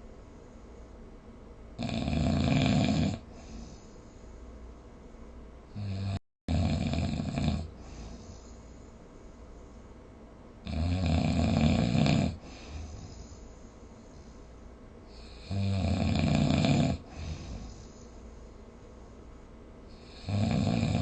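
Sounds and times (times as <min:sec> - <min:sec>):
person snoring: 0:01.8 - 0:03.6, 0:05.7 - 0:08.4, 0:10.6 - 0:13.2, 0:15.1 - 0:17.9, 0:19.9 - 0:21.0.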